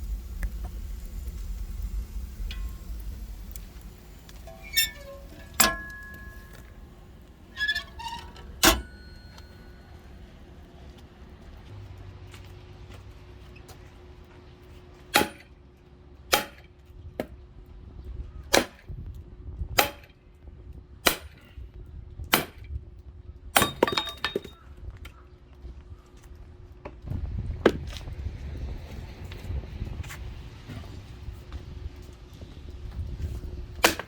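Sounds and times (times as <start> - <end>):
metallic ring: 2.4 - 3.6, 4.3 - 10.2
axe chopping firewood: 15.1 - 15.5, 16.3 - 16.6, 18.5 - 18.8, 19.8 - 20.1, 21.1 - 21.4, 22.4 - 22.6, 23.6 - 24.5.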